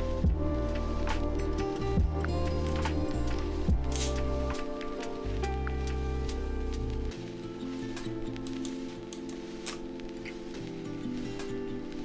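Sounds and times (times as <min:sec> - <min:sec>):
background music with low notes: 0:00.0 - 0:12.0.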